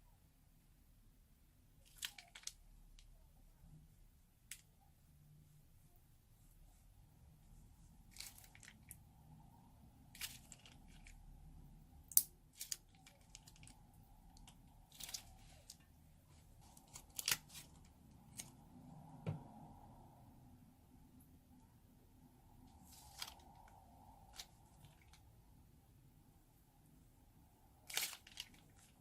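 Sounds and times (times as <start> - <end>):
slime crackling and popping: 27.9 - 29.0.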